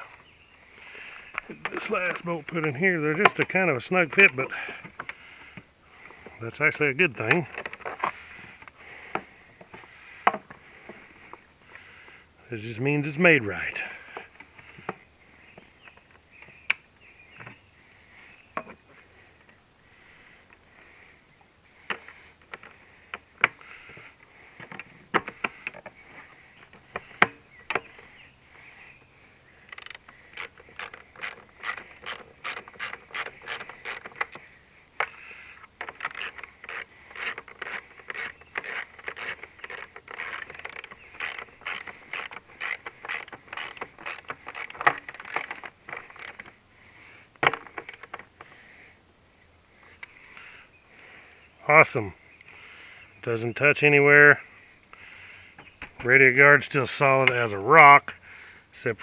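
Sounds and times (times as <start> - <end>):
ratchet wrench clicking: 29.7 - 34.4, 35.9 - 46.5.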